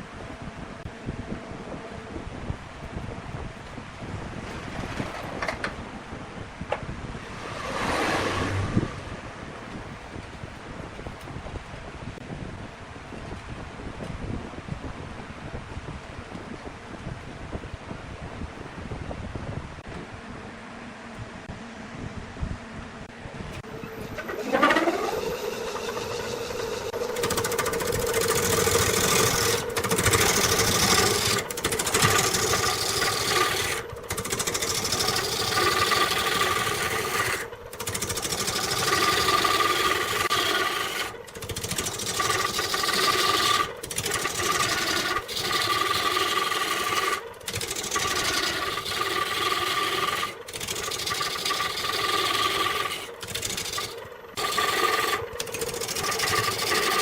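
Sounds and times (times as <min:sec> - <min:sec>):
tool scraping spinning wood: 0:04.1 - 0:10.4, 0:23.6 - 0:57.0
wood lathe humming: 0:23.6 - 0:57.0.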